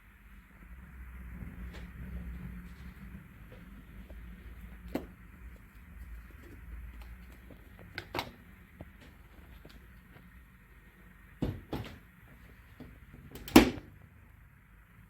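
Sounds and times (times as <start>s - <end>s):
heavy thump: 11.4s - 12.0s.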